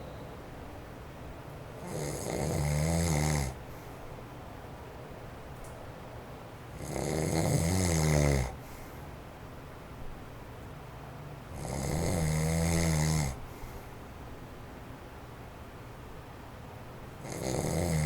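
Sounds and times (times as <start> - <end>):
electric fan whirring: 0.0 - 18.0
man snoring: 1.8 - 3.6, 6.8 - 8.6, 11.6 - 13.4, 17.2 - 18.0.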